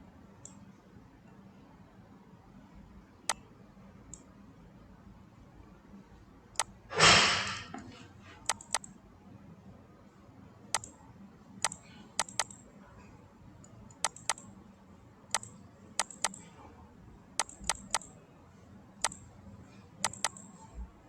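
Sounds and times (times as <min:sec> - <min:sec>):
computer mouse clicking: 0:00.4 - 0:00.6, 0:08.4 - 0:08.9, 0:10.7 - 0:11.0, 0:11.6 - 0:12.6, 0:13.6 - 0:14.5, 0:15.3 - 0:16.5, 0:17.4 - 0:18.1, 0:19.0 - 0:19.2, 0:20.0 - 0:20.6.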